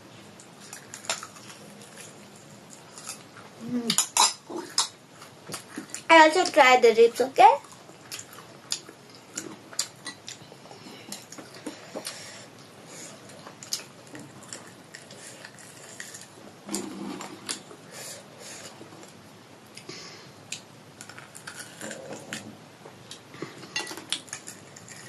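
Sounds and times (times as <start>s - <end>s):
people eating: 7.6s - 25.0s
cutlery and dishes clinking: 23.6s - 25.0s.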